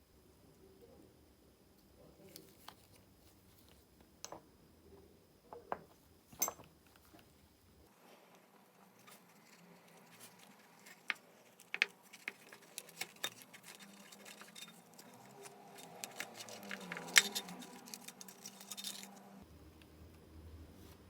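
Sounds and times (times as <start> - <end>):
small metal parts clicking: 6.4 - 6.7, 10.3 - 19.2.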